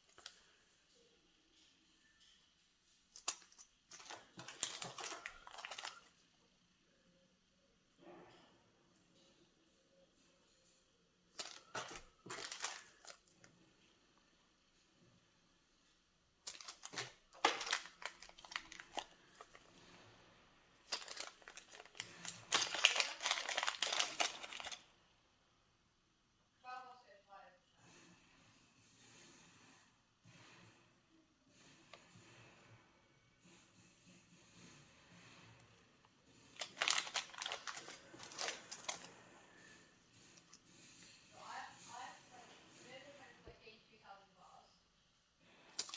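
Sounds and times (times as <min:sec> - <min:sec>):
packaging crinkling and rustling: 0:04.0 - 0:06.1, 0:16.5 - 0:19.9, 0:20.8 - 0:24.8, 0:36.6 - 0:39.1.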